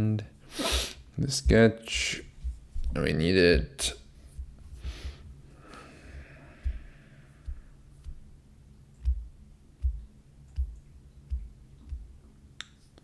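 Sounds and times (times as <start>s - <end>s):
faint low hum: 0.0s - 13.0s
soft low thumps on desk: 1.0s - 5.4s, 6.1s - 8.4s, 9.0s - 12.2s.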